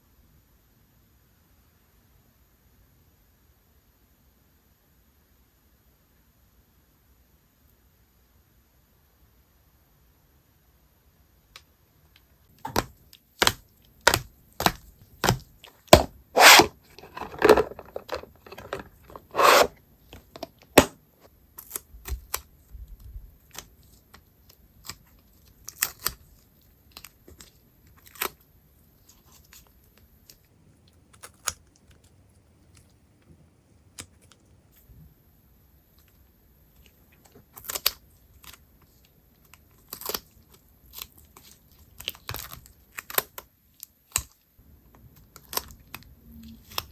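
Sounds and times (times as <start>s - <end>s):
packaging rustling: 16.0s - 19.7s
tape tearing strokes: 16.0s - 19.8s.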